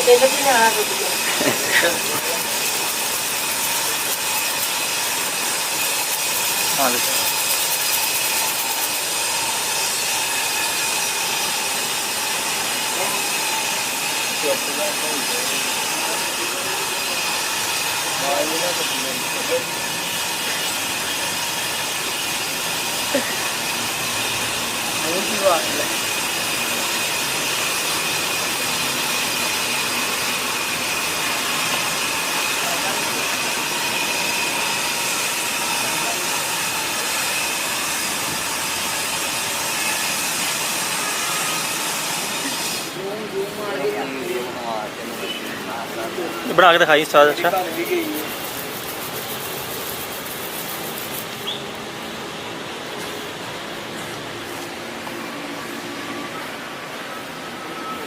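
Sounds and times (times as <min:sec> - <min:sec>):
factory machine hiss: 0:00.1 - 0:56.5
faint high whine: 0:55.1 - 0:58.0.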